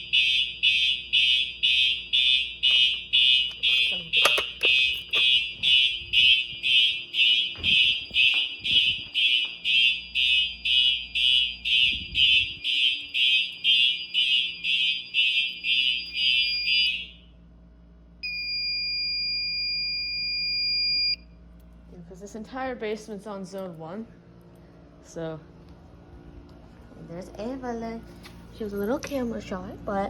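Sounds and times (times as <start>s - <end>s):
fire alarm horn pulsing: 0.0s - 17.4s, 18.2s - 21.2s
steady high-pitched beep: 18.2s - 21.2s.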